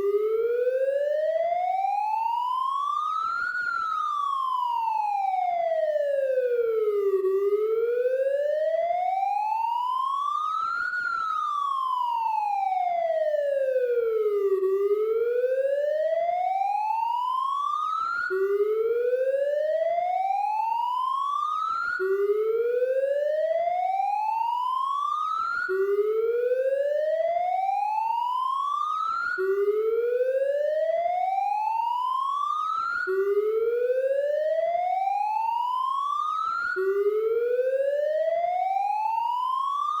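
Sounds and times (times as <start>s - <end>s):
police siren wailing: 0.0s - 40.0s.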